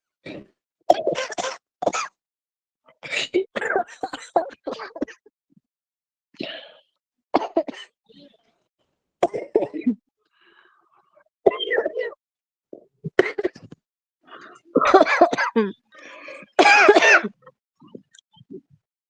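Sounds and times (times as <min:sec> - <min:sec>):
person coughing: 0:03.1 - 0:05.1, 0:09.2 - 0:10.0, 0:14.8 - 0:15.8, 0:16.4 - 0:17.4.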